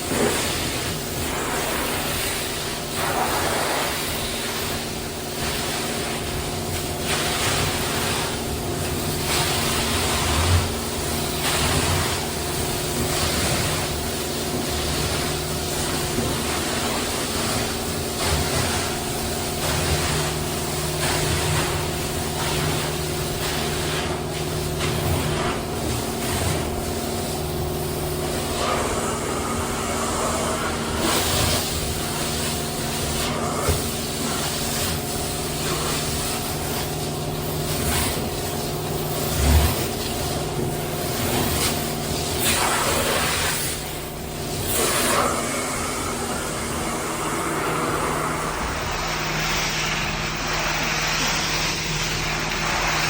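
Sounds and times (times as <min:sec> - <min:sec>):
carpet cleaning machine motor hum: 0:24.2 - 0:34.6, 0:43.8 - 0:53.0.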